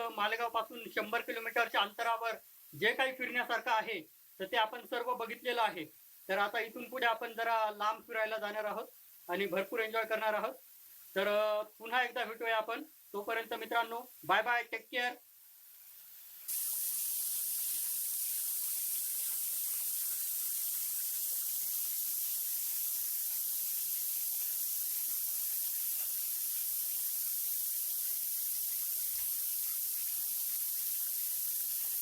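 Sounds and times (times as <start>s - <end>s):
waterfall rushing hiss: 16.5s - 32.0s.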